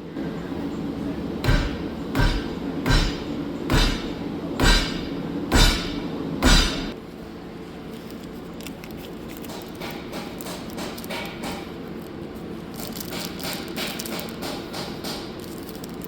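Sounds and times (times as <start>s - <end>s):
hammer blows on metal: 1.4s - 7.0s.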